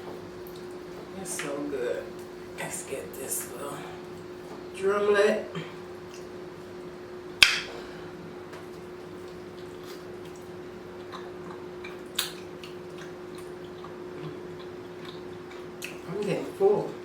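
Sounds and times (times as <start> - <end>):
steady low hum: 0.0 - 17.0
chewing chicken with wet smacks: 8.6 - 16.1.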